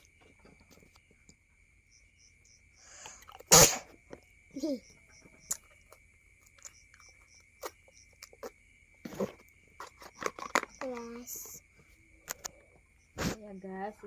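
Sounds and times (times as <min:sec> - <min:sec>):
person sneezing: 0:03.5 - 0:03.9.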